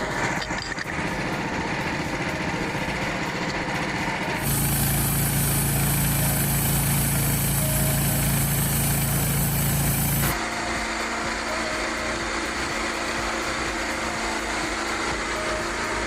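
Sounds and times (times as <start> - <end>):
small gasoline engine running: 0.0 - 16.0
high hiss: 4.4 - 10.3.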